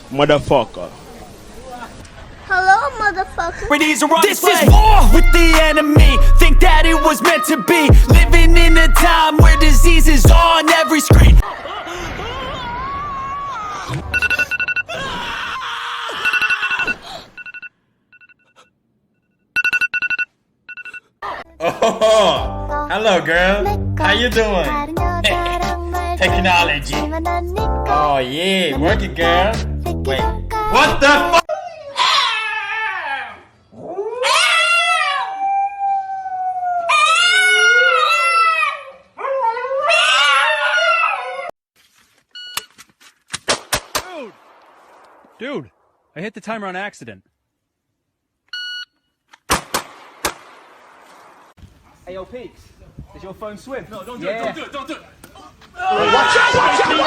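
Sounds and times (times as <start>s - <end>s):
electronic phone ringing: 14.1s - 14.9s, 16.2s - 18.6s, 19.5s - 21.1s
dog howling: 31.5s - 41.6s.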